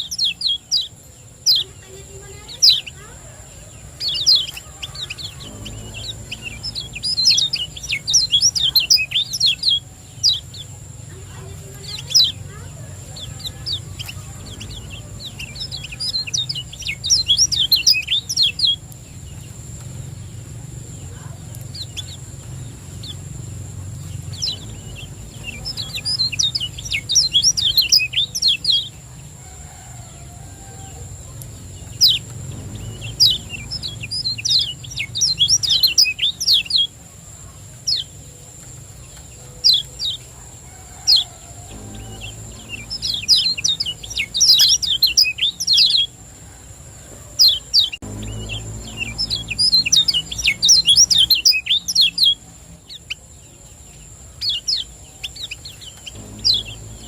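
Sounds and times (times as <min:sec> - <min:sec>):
bird chattering high chirps: 0:00.0 - 0:18.8, 0:24.1 - 0:29.0, 0:31.9 - 0:37.0, 0:40.9 - 0:46.1, 0:47.4 - 0:53.2
low hum: 0:03.8 - 0:29.4, 0:30.4 - 0:37.1, 0:41.3 - 0:46.1, 0:48.0 - 0:52.8, 0:56.0 - 0:57.0.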